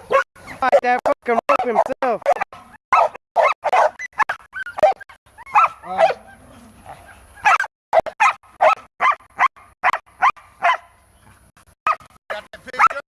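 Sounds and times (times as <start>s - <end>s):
dog whining yelps: 0.0s - 0.6s, 2.3s - 10.8s
dog barking: 0.0s - 0.8s, 1.5s - 2.4s, 3.0s - 4.0s, 4.6s - 10.9s, 11.9s - 12.1s, 12.8s - 13.0s.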